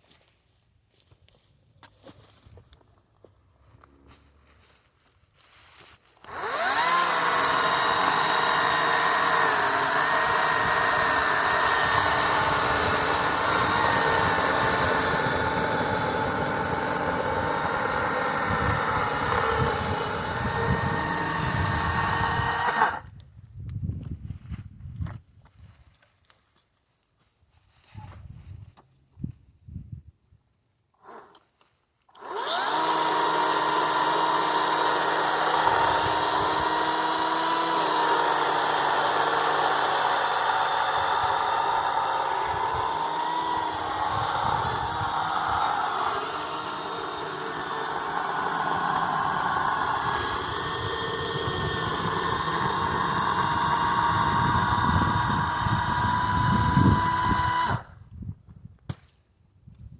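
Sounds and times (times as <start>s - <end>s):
electric chainsaw cutting wood: 6.2s - 23.1s, 31.0s - 31.4s, 32.1s - 57.9s.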